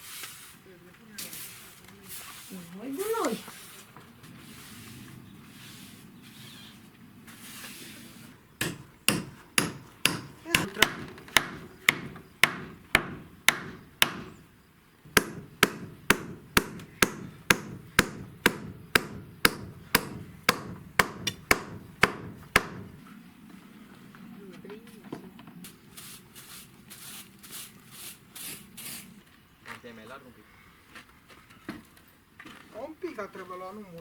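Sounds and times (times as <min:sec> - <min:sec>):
hammer blows: 0:08.6 - 0:14.4, 0:15.1 - 0:23.0.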